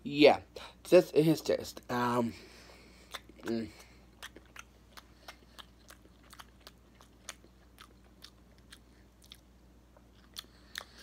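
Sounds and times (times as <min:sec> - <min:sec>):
faint mouth chewing: 0:02.9 - 0:11.0.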